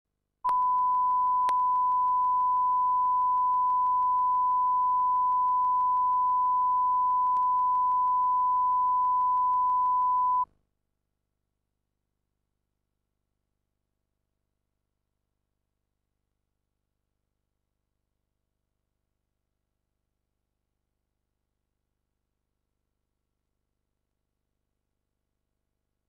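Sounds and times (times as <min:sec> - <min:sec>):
sine test tone: 0:00.5 - 0:10.5.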